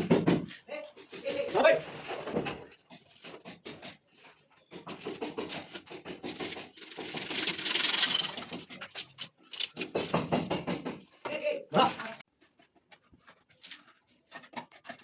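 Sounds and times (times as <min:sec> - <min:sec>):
scraping and rubbing on a pipe: 0:11.8 - 0:15.0.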